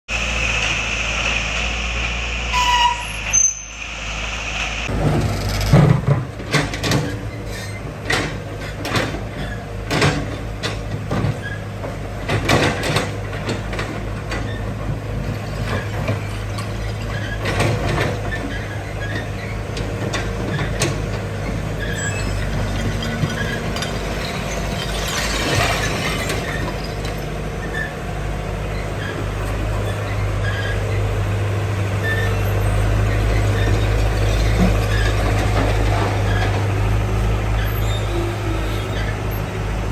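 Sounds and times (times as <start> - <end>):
excavator engine hum: 0.1 - 39.9
debris crashing: 22.3 - 27.3.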